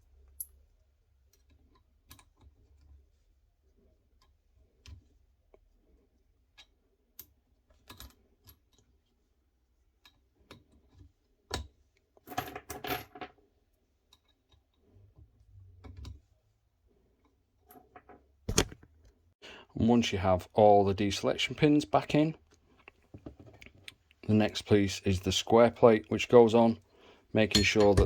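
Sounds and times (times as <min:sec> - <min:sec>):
metal pins clicking and clinking: 0:27.5 - 0:28.0.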